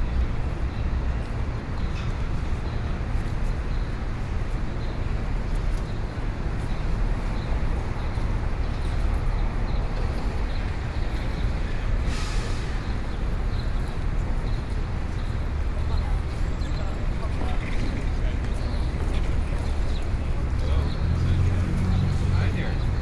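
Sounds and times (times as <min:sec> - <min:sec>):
low rumble of traffic: 0:00.0 - 0:23.0
short hiss: 0:12.1 - 0:12.9.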